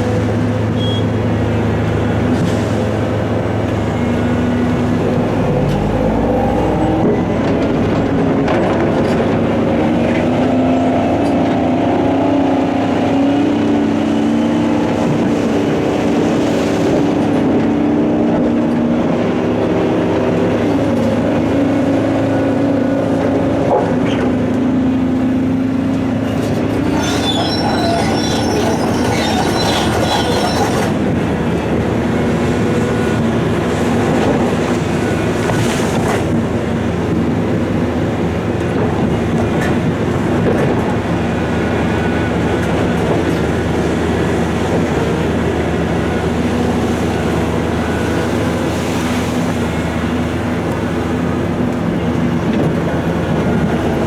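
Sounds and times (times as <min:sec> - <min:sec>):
heavy diesel machinery running: 0:00.0 - 0:54.0
high metallic squealing and scraping: 0:26.2 - 0:31.1.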